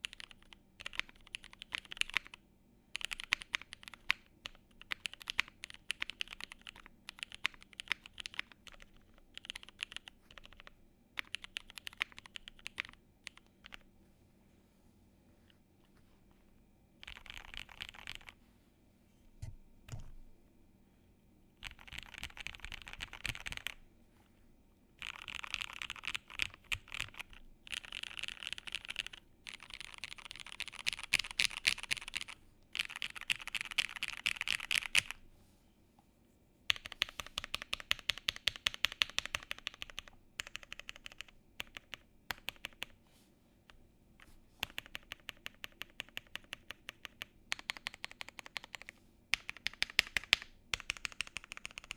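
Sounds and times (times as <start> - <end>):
mechanical keyboard typing: 0.0 - 13.8, 17.0 - 18.4, 21.6 - 23.8, 25.0 - 35.2, 36.7 - 43.0, 44.6 - 51.9.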